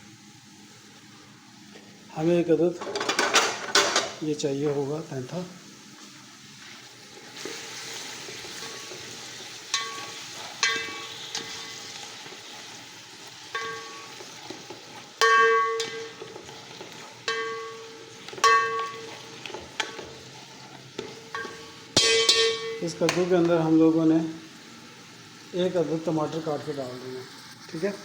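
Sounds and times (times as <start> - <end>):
food sizzling in hot oil: 0.0 - 28.0
metal spatula clanging on pot: 2.8 - 4.2, 8.4 - 12.2, 13.5 - 20.3, 20.9 - 23.7.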